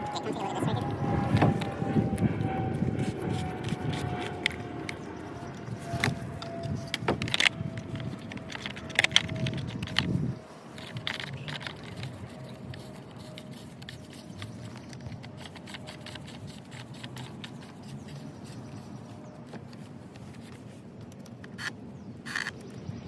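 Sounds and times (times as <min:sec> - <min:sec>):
parts clicking and scraping: 0:01.3 - 0:22.8.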